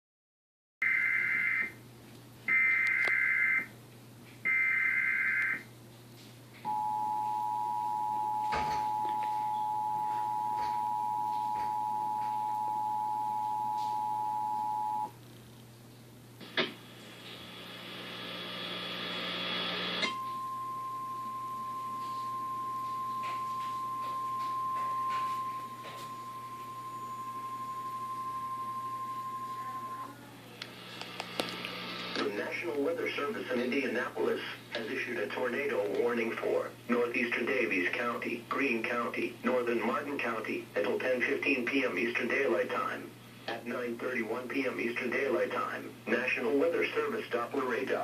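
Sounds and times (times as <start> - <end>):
steady warning alarm tone: 0.8 - 1.8, 2.5 - 3.7, 4.5 - 5.7, 6.7 - 15.1, 17.7 - 30.2
two-tone attention signal: 6.7 - 15.1, 20.0 - 30.2
hissing static: 16.4 - 20.1, 30.5 - 36.4.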